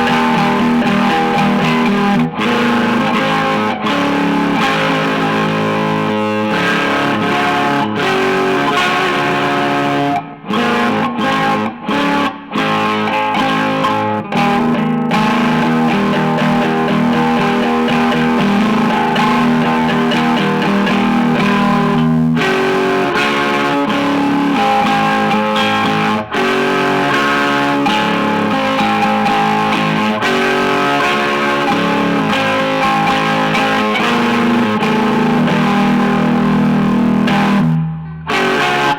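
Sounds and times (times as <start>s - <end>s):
electric guitar chords: 0.0s - 38.9s.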